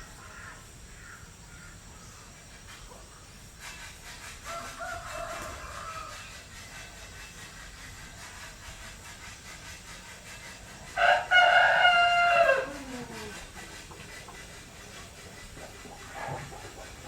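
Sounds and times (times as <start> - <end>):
rooster crowing: 4.4 - 6.3, 11.0 - 13.4.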